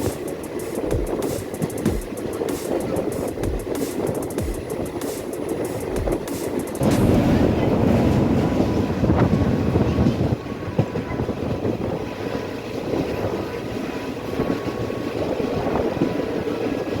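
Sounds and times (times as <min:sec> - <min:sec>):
sharp rail clicks: 0:00.0 - 0:10.2
train rumbling on rails: 0:00.0 - 0:17.0.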